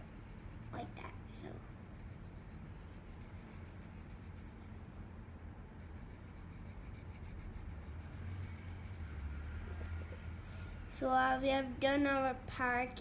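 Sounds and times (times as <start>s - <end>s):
pencil scratching on paper: 0.0s - 1.2s, 1.9s - 4.8s, 5.8s - 10.9s
steady low hum: 0.0s - 13.0s.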